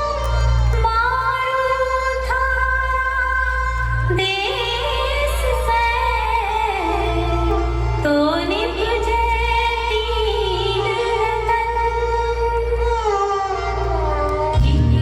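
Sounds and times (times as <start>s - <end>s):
steady low bass: 14.5s - 15.0s.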